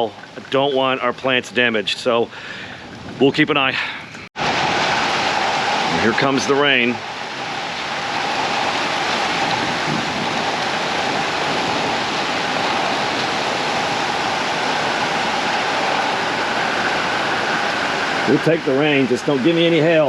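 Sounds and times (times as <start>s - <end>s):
heavy rain pouring: 4.4s - 20.0s.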